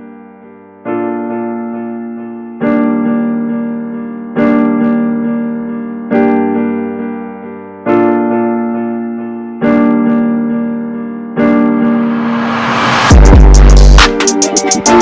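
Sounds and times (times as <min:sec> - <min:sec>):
keyboard chords ringing: 0:13.1 - 0:15.0.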